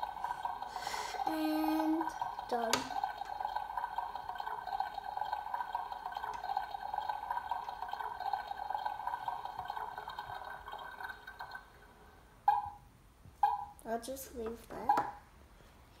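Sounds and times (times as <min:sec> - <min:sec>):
toy coffee machine filling cup: 0:00.0 - 0:11.8.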